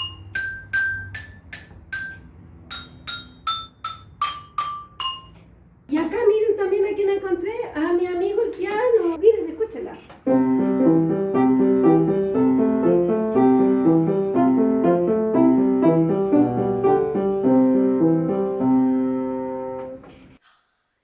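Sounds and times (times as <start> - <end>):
piano tune: 0.0 - 5.5, 10.3 - 20.0.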